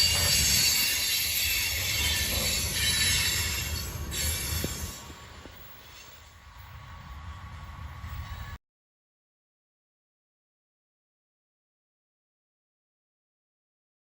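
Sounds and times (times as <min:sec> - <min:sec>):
train cars rumbling on rails: 0:00.0 - 0:08.6
train wheel screech: 0:00.0 - 0:08.6.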